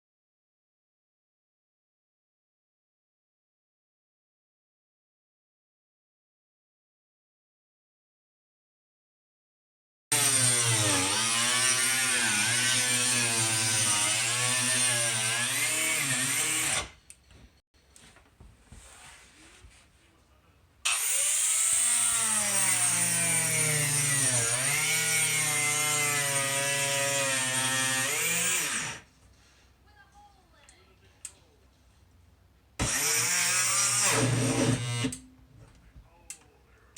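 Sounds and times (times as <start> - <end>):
power tool motor cutting: 10.1 - 17.0, 20.9 - 29.1, 32.8 - 35.3.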